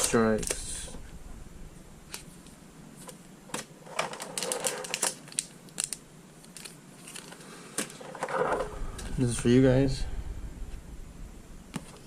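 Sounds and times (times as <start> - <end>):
packaging clicks and crinkles: 3.5 - 8.1.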